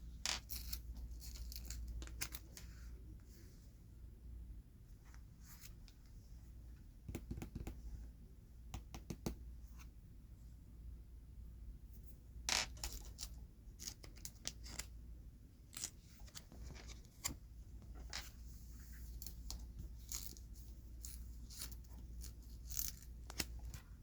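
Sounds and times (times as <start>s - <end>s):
cards rustling and clicking: 0.3s - 2.7s, 19.0s - 23.9s.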